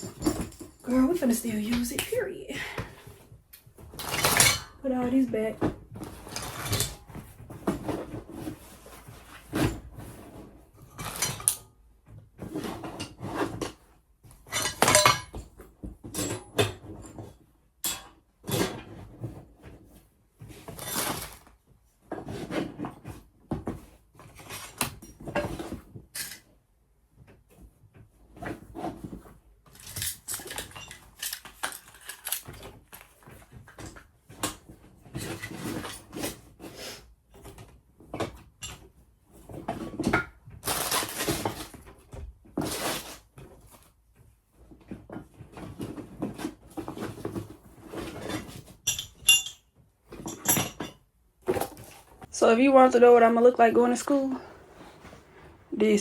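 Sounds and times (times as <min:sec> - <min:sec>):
metal tools clinking and clattering: 0:00.0 - 0:01.9, 0:14.5 - 0:15.4, 0:29.8 - 0:32.6, 0:48.1 - 0:51.0.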